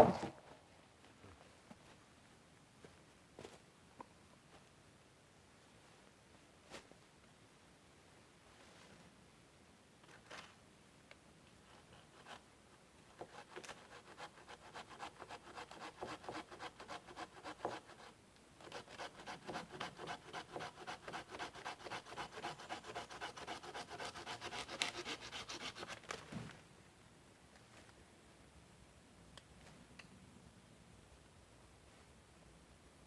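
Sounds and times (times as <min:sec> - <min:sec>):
hand saw cutting wood: 0:13.1 - 0:26.0.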